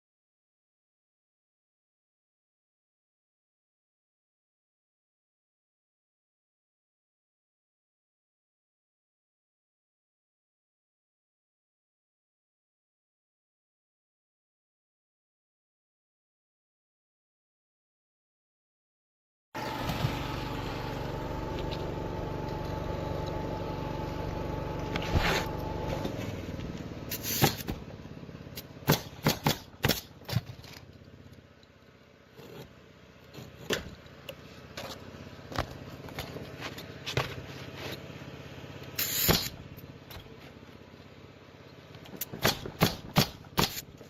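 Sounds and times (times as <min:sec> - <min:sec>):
motor running: 0:19.6 - 0:31.4, 0:32.3 - 0:44.0.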